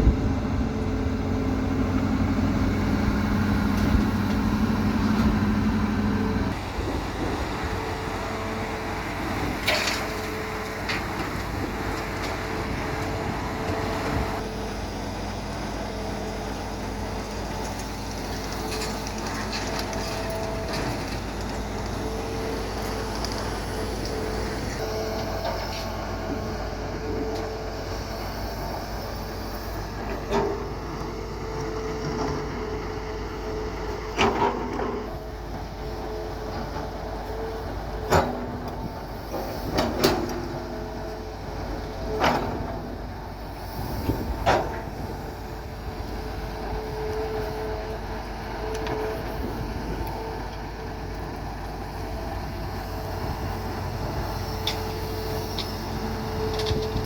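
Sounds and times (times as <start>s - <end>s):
excavator diesel engine running: 0.0s - 57.0s
excavator metal clanks: 9.2s - 14.5s, 29.9s - 31.0s, 34.0s - 35.4s, 36.4s - 41.0s, 41.8s - 43.1s, 52.4s - 57.0s.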